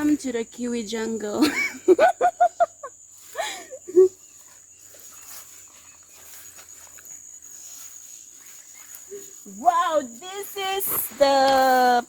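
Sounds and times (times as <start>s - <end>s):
high-pitched insect drone: 0.0s - 12.0s
rustling steps through vegetation: 4.2s - 12.0s.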